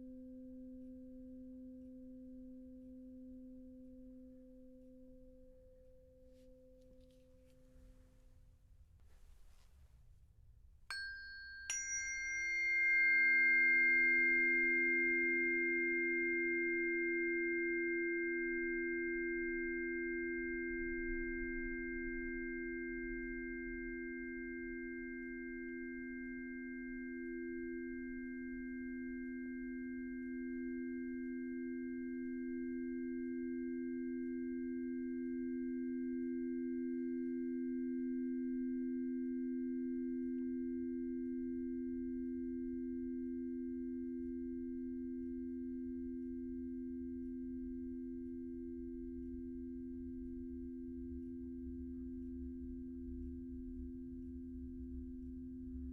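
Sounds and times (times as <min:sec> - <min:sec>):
singing bowls ringing: 0:10.9 - 0:31.5.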